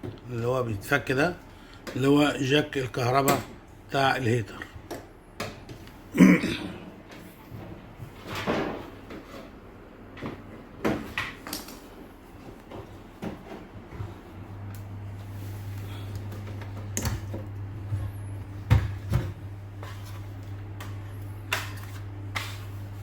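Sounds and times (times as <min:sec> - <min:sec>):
steady low hum: 0:00.0 - 0:23.0
parts knocking and clattering: 0:10.1 - 0:13.7.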